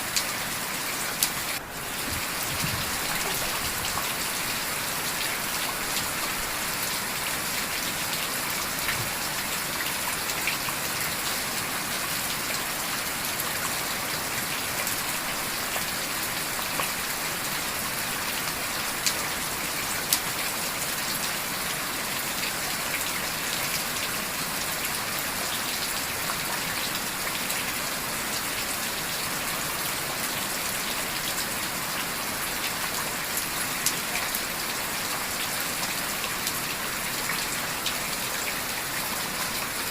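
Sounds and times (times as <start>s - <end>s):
heavy rain hiss: 0.0s - 33.8s.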